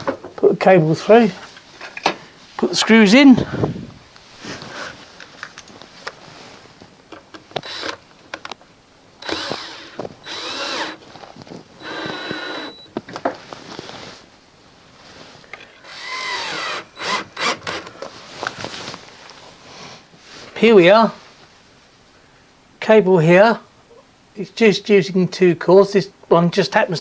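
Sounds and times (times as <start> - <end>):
cordless drill motor whining: 7.6 - 8.0, 9.2 - 11.1, 11.8 - 12.9, 15.6 - 18.1.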